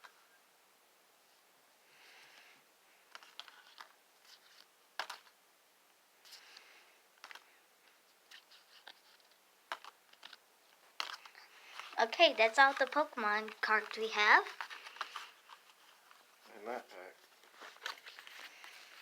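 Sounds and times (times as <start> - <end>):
trading cards clicking and rustling: 3.1 - 5.3, 6.3 - 7.5, 8.3 - 16.3, 17.4 - 19.0.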